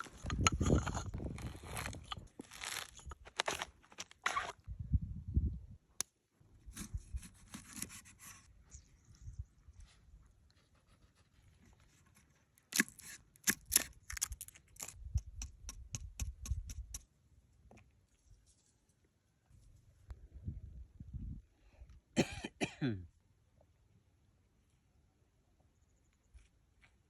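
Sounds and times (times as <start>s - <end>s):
rustling and scraping: 0.0s - 4.6s.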